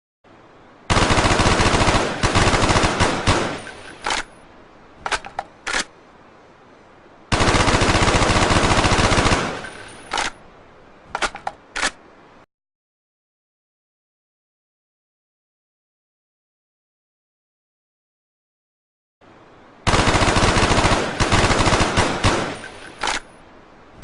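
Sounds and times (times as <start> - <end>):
automatic rifle fire: 0.9 - 4.2, 19.9 - 23.2
sharp clicks and cracks: 3.6 - 4.3, 11.1 - 12.0.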